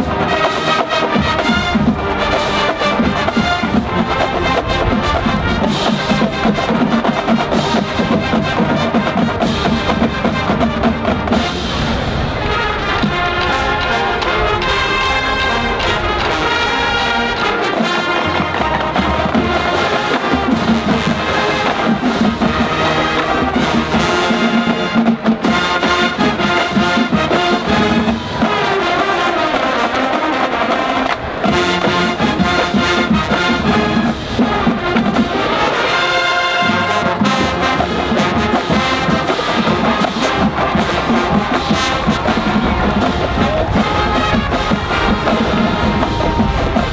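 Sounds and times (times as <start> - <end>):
brass instrumental music: 0.0 - 46.9.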